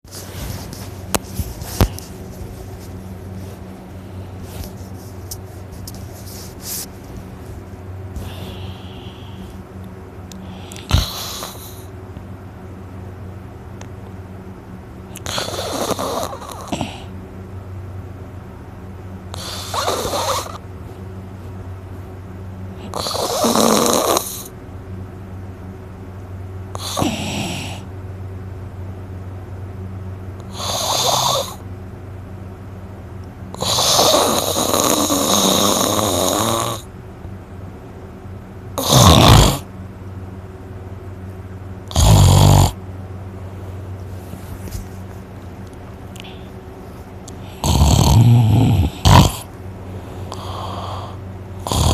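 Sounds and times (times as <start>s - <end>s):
person snoring loudly: 10.4s - 11.9s, 15.2s - 17.1s, 19.3s - 20.6s, 22.8s - 24.5s, 26.8s - 27.9s, 30.5s - 31.6s, 33.6s - 36.9s, 38.8s - 39.7s, 41.9s - 42.8s, 47.4s - 49.5s, 50.3s - 51.9s.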